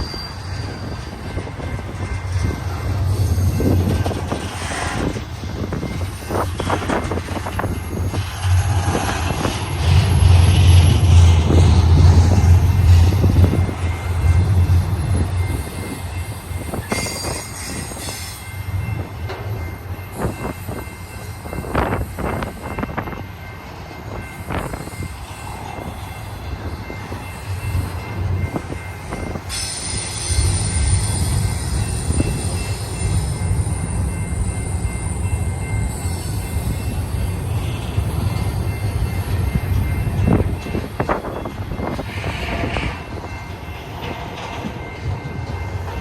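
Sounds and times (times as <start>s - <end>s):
high wheel squeal: 0.0s - 1.2s, 41.8s - 43.0s
freight train rumble: 0.0s - 46.0s.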